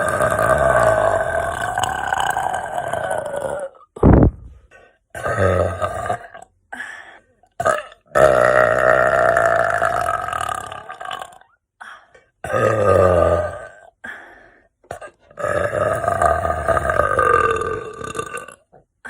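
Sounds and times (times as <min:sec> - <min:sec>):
woman burping loudly: 0:00.0 - 0:04.3, 0:05.1 - 0:06.5, 0:07.5 - 0:11.6, 0:12.4 - 0:14.0, 0:14.9 - 0:18.7.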